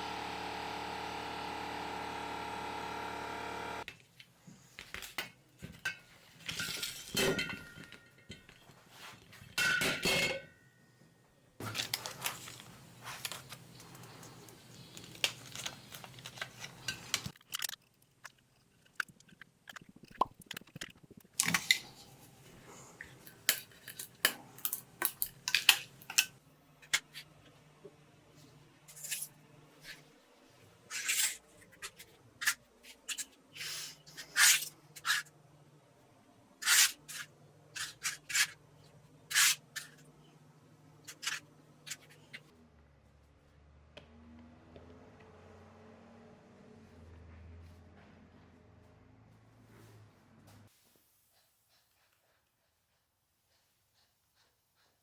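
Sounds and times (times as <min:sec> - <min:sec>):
machine hum: 0:00.0 - 0:03.8.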